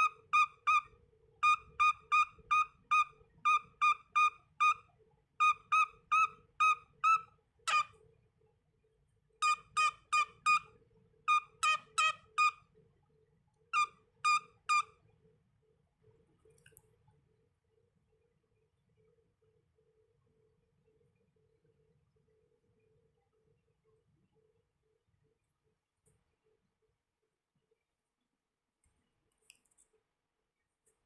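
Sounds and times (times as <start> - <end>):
cockatiel whistling: 0.0 - 4.8, 5.4 - 7.9, 9.4 - 10.7, 11.3 - 12.6, 13.8 - 14.9.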